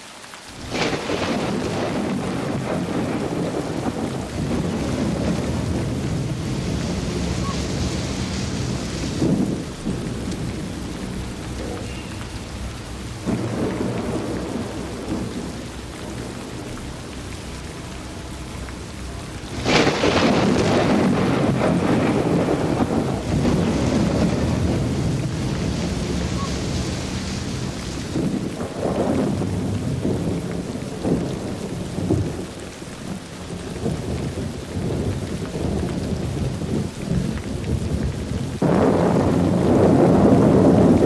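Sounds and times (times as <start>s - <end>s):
heavy rain pouring: 0.0s - 41.0s
rolling thunder: 0.5s - 41.0s
sharp thunder crack: 0.6s - 17.2s, 19.3s - 41.0s.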